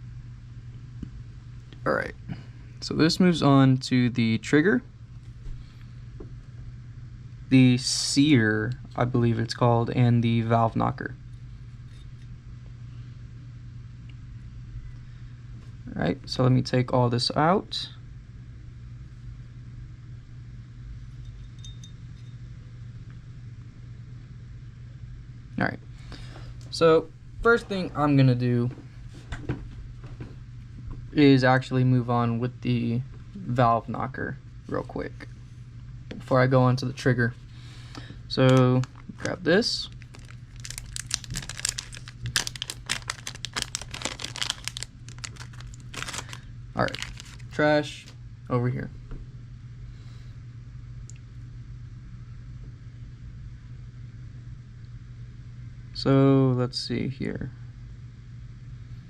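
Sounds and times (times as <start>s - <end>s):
steady low hum: 0.0s - 59.0s
plastic packaging crinkling: 37.9s - 48.2s.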